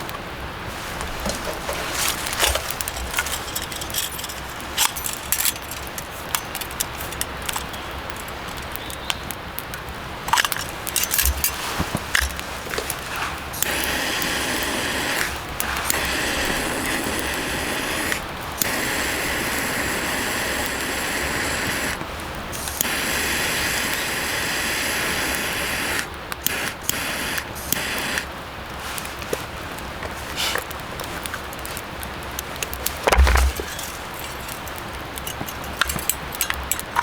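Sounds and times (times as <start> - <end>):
food sizzling in a wok: 11.3 - 30.8.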